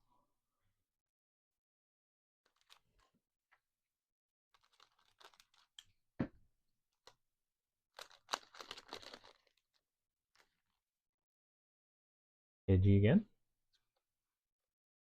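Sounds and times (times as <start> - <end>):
foil pack crinkling and tearing: 2.5 - 3.0, 4.6 - 5.8, 8.0 - 9.8.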